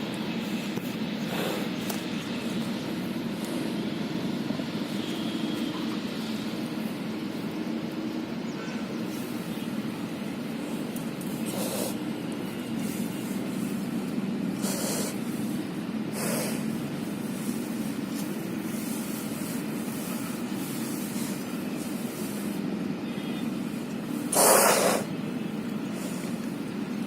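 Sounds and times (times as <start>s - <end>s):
cow breathing through nose: 0.0s - 4.4s, 10.5s - 22.7s, 24.2s - 25.2s, 25.8s - 26.7s.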